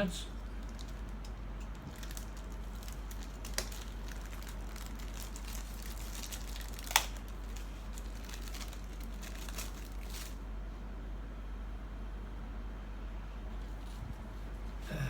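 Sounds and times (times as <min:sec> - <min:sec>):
steady low hum: 0:00.0 - 0:15.0
plastic crinkling and rustling: 0:00.3 - 0:10.4
sharp plastic clicks: 0:06.4 - 0:07.6.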